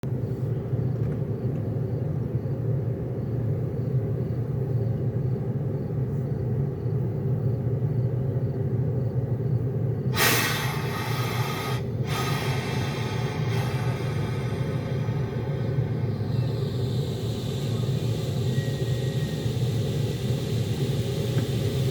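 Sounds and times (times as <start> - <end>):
locomotive cooling blowers humming: 0.1 - 21.9
loud hiss: 10.1 - 21.9.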